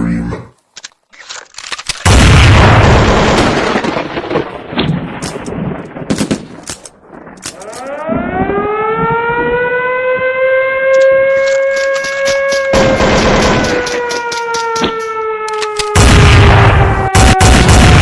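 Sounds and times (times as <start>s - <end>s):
loud blast: 2.1s - 4.3s, 16.0s - 18.0s
siren wailing: 7.5s - 18.0s.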